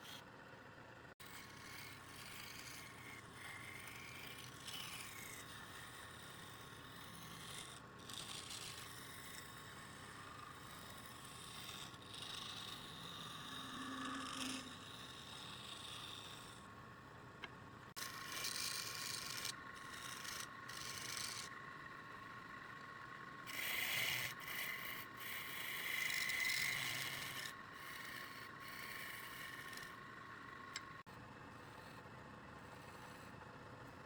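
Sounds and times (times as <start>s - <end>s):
tool rasping on turning wood: 1.2s - 16.7s, 17.9s - 21.5s, 23.5s - 30.0s
lathe whine: 1.3s - 16.6s, 18.2s - 31.0s.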